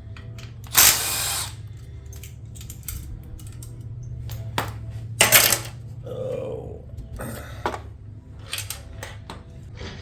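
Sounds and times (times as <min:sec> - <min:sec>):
small metallic clicks: 0:00.0 - 0:05.8, 0:08.4 - 0:09.5
steady low hum: 0:00.0 - 0:09.7
power tool spinning: 0:00.6 - 0:01.7.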